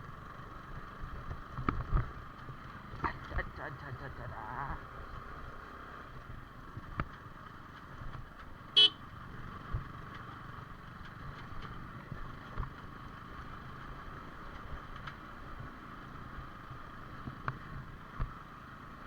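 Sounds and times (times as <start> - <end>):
motorcycle engine: 0.0 - 19.0
horn beep: 8.8 - 9.0.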